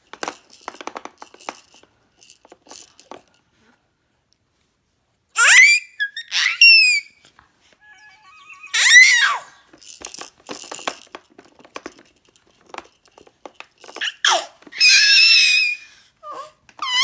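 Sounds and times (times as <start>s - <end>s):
clicks and rattles: 0.0s - 3.4s, 9.7s - 14.9s
baby squealing: 5.4s - 7.2s, 7.8s - 9.6s, 14.0s - 17.0s.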